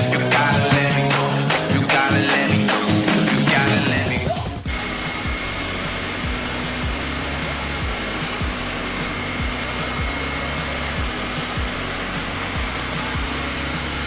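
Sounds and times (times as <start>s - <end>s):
background music with steady beat: 0.0s - 14.0s
rushing machine noise: 4.6s - 14.0s.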